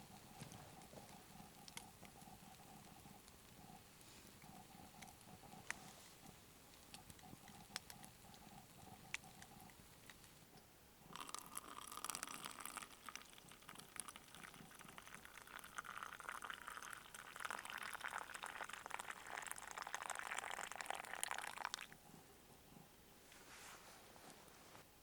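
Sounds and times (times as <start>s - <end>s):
liquid pouring: 11.1s - 22.0s.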